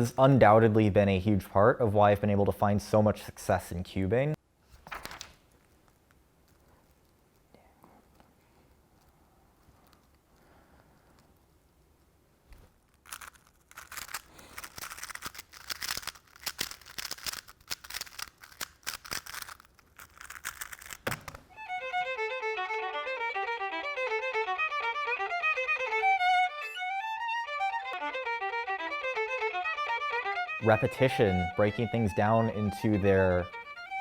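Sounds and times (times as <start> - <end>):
plastic cube clicking: 13.0 - 21.5
solo violin playing fast: 21.5 - 34.0.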